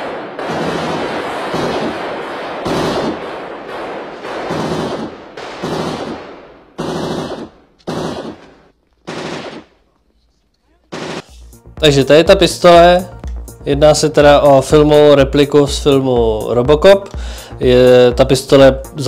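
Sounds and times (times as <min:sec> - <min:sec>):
automatic gunfire: 0:00.0 - 0:09.8, 0:10.9 - 0:11.3.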